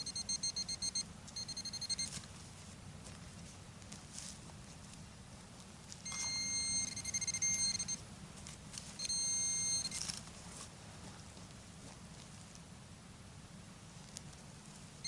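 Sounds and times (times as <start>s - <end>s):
metal detector high beeps: 0.0s - 2.1s, 6.0s - 8.0s, 9.0s - 10.1s.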